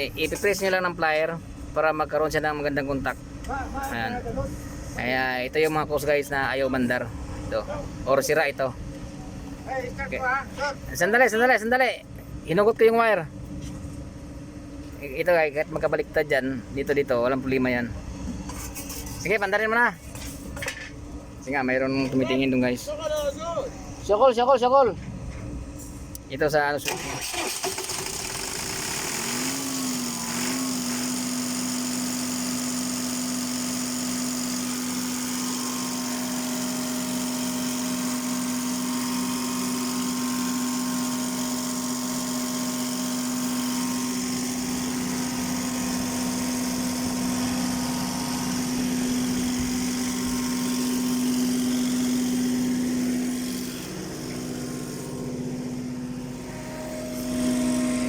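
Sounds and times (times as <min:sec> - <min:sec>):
diesel generator engine running: 0:26.8 - 0:58.0.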